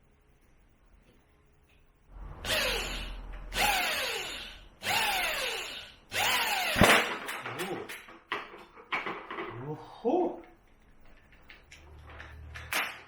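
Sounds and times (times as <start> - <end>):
power drill running: 2.2 - 7.1.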